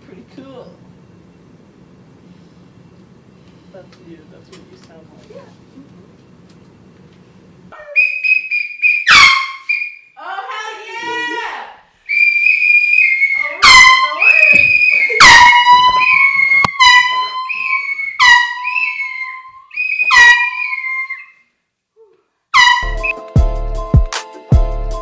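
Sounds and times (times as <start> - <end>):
air horn honks: 13.6 - 18.9, 22.6 - 23.2
music with heavy beat: 23.0 - 25.0.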